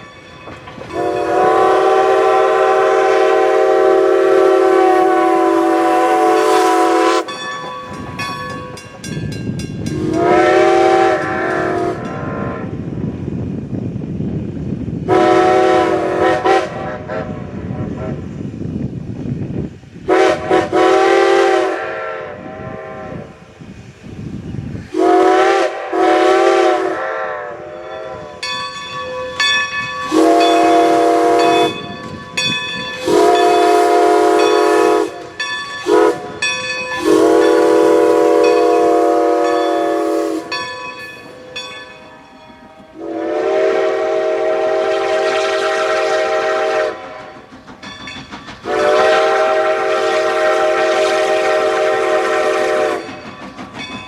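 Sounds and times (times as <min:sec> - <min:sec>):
steam whistle blasts: 0:00.9 - 0:07.3, 0:09.9 - 0:12.8, 0:15.1 - 0:18.3, 0:20.1 - 0:23.4, 0:24.9 - 0:28.5, 0:29.1 - 0:31.9, 0:32.9 - 0:40.7, 0:43.0 - 0:47.4, 0:48.6 - 0:53.2.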